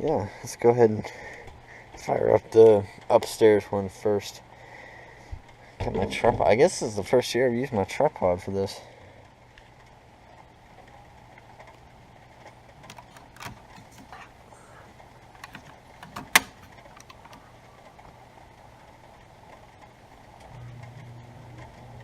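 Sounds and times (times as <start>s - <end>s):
gas furnace humming: 0.0s - 22.0s
clicks and small knocks: 12.4s - 18.1s.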